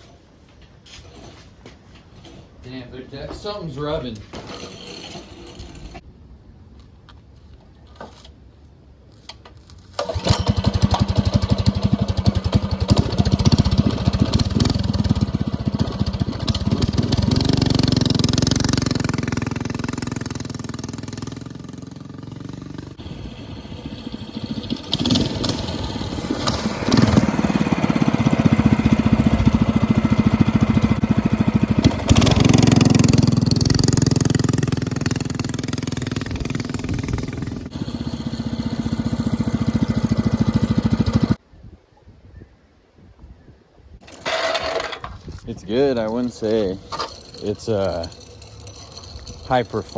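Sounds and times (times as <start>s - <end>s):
minibike engine revving: 4.4s - 6.0s, 10.0s - 41.4s, 44.0s - 49.9s.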